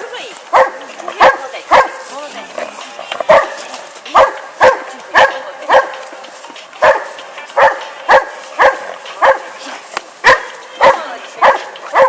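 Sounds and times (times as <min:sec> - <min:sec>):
dog barking: 0:00.5 - 0:02.0, 0:03.3 - 0:06.0, 0:06.8 - 0:09.6, 0:10.2 - 0:12.0.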